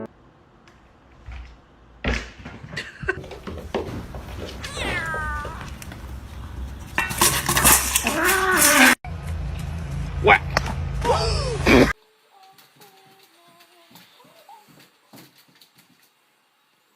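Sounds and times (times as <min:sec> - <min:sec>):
cat meowing: 0:04.4 - 0:06.1.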